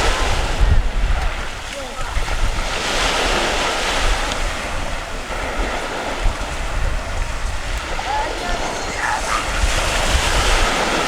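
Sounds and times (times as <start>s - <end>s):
sea waves washing on shore: 0.0s - 11.0s
wind rumbling on microphone: 0.0s - 11.0s.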